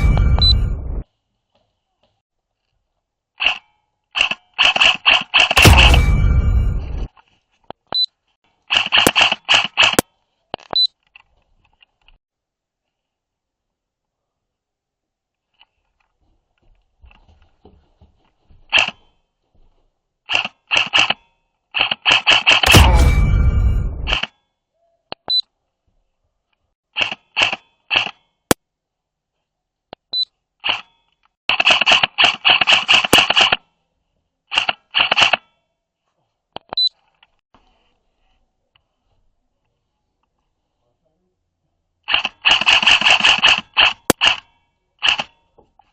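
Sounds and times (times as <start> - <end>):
airsoft gun shots: 5.4 - 7.0, 22.2 - 24.2
sharp click: 8.7 - 10.0, 31.5 - 33.6, 42.1 - 45.4.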